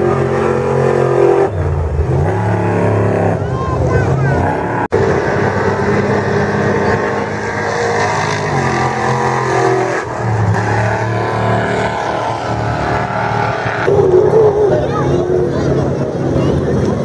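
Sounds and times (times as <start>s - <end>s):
truck engines revving: 0.0s - 17.0s.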